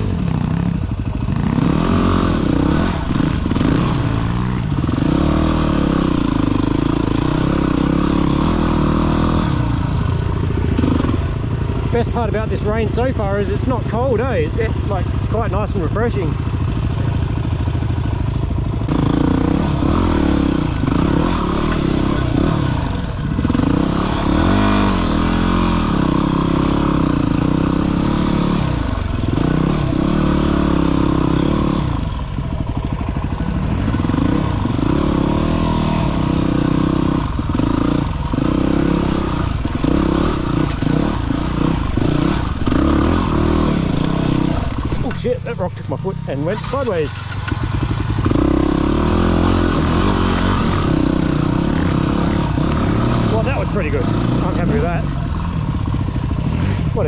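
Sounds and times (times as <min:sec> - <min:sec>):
dirt bike engine revving: 0:00.0 - 0:57.0.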